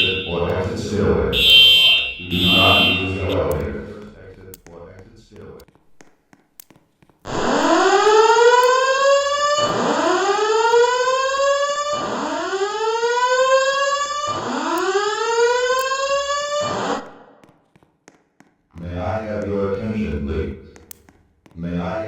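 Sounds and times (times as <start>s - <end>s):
fire alarm whoop tone: 0.0s - 3.6s, 7.3s - 17.2s.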